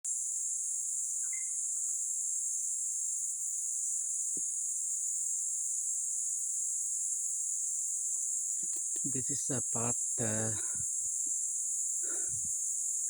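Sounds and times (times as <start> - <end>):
insects chorus: 0.1 - 13.0
short pulsed chirp: 1.2 - 1.6.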